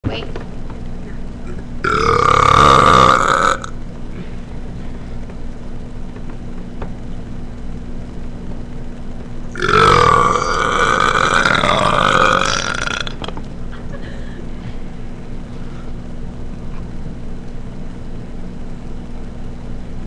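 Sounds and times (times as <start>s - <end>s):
man belching: 1.5s - 3.7s, 9.6s - 13.3s.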